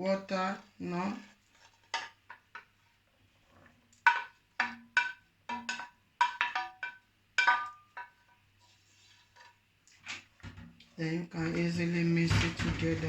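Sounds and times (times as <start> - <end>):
utensil clattering against metal pan: 1.9 - 2.7, 4.0 - 8.4, 11.4 - 13.0.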